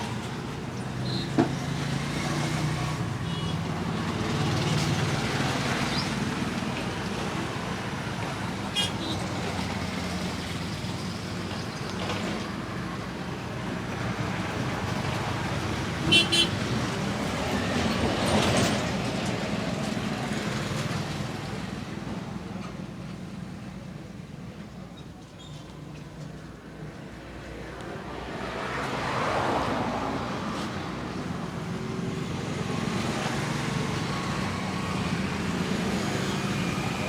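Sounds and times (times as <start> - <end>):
traffic rumble: 0.0 - 37.0
car horn toots: 16.1 - 16.6.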